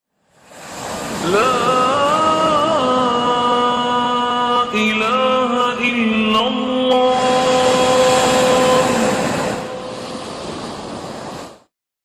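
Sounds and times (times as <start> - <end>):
rush of noise: 6.9 - 11.7.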